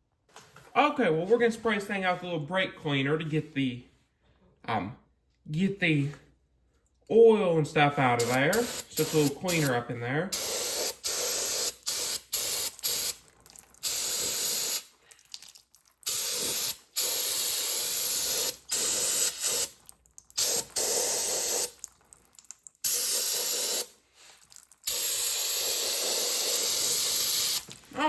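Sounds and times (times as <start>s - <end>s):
aerosol can spraying in bursts: 8.2s - 13.2s, 13.8s - 14.9s, 16.0s - 19.8s, 20.4s - 21.8s, 22.8s - 24.0s, 24.8s - 27.8s.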